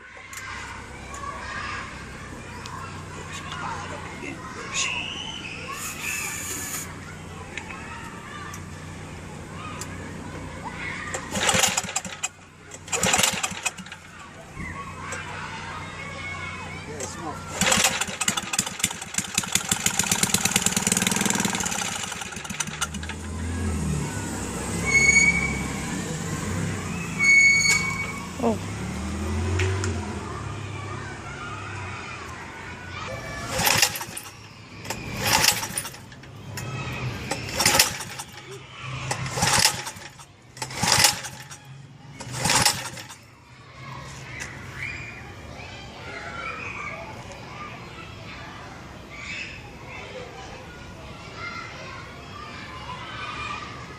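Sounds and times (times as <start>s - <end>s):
birds chirping: 0.1s - 11.7s, 12.3s - 40.6s, 41.3s - 53.9s
small engine running: 0.2s - 45.8s.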